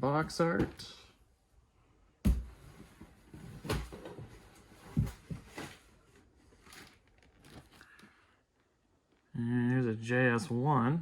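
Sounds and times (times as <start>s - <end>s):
cardboard boxes thumping: 2.3s - 5.8s
cardboard rustling: 2.3s - 8.1s.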